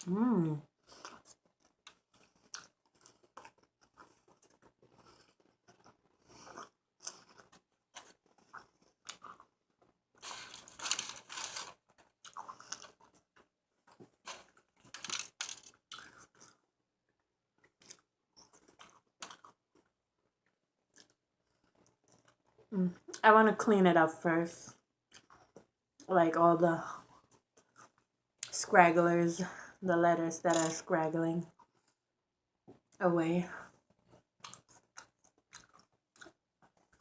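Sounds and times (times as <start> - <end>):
crunchy chewing of a burger: 0.8 - 22.7, 33.8 - 37.0.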